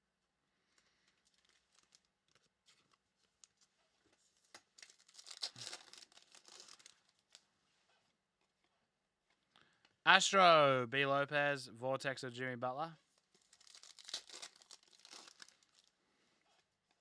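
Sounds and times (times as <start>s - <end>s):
foil wrapper crinkling and tearing: 1.1s - 3.7s, 4.5s - 7.4s, 13.1s - 15.9s.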